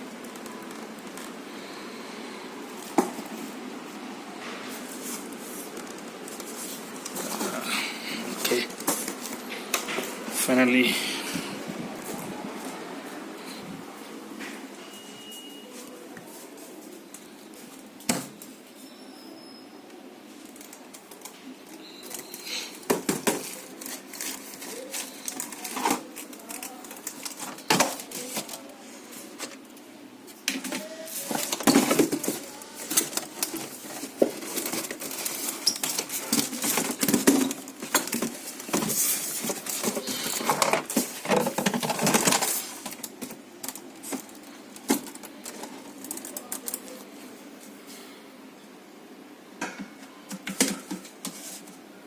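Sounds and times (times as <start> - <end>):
plastic and metal parts rattling: 20.4 - 28.7, 30.4 - 47.0.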